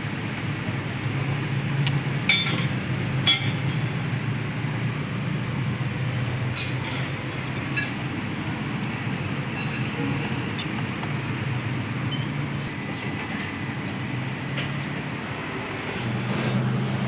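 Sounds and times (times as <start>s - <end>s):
ringing metallic clinks: 2.3s - 3.9s.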